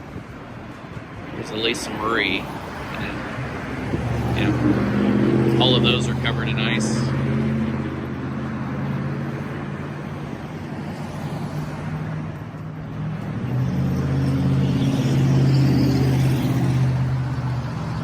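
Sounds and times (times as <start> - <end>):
traffic noise: 0.0 - 18.0
vehicle engine humming: 0.0 - 18.0.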